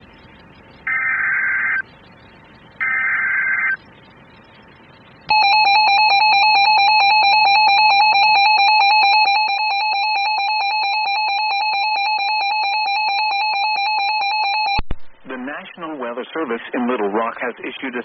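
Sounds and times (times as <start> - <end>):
buzzy data bursts: 2.8 - 4.4.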